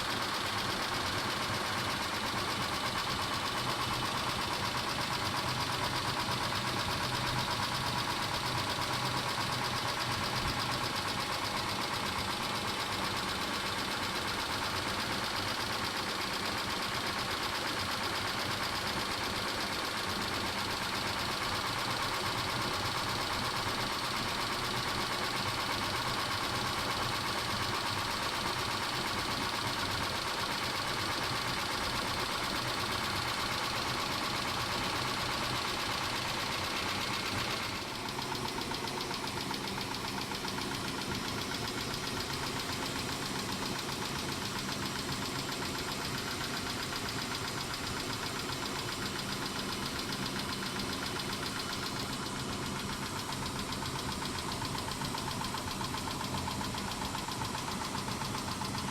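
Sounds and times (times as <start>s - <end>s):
engine running: 36.1s - 58.7s.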